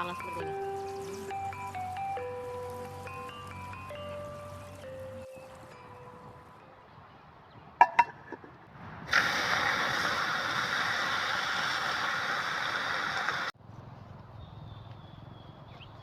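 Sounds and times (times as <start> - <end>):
food sizzling in hot oil: 0.0 - 4.9.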